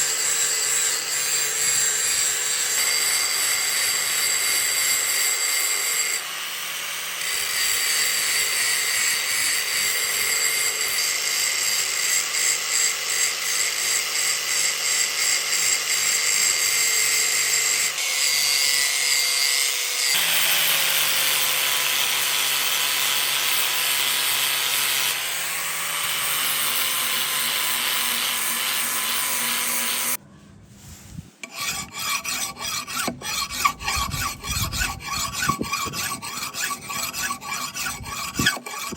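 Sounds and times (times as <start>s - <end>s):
grinder rasping steel: 0.0s - 30.2s, 31.4s - 38.9s
uneven rasping strokes: 22.7s - 38.9s.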